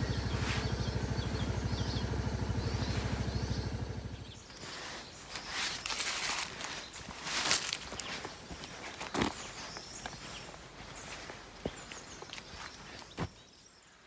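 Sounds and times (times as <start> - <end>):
motorcycle engine idling: 0.0 - 8.8
faint birdsong: 0.0 - 14.0
light rustling: 4.5 - 13.4.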